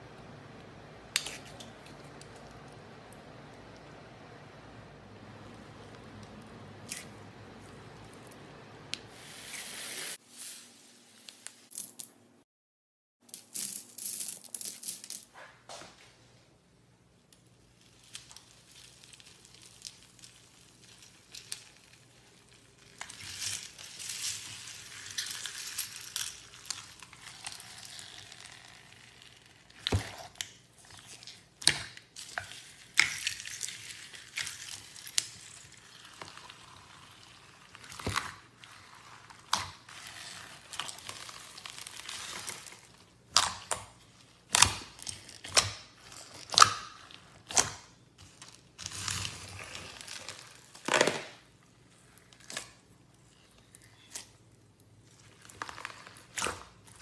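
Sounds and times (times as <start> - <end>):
slime squishing: 17.7 - 57.0.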